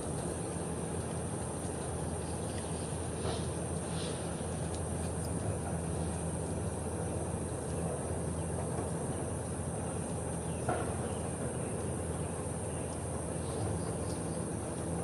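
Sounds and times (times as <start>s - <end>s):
low constant rumble: 0.0s - 15.0s.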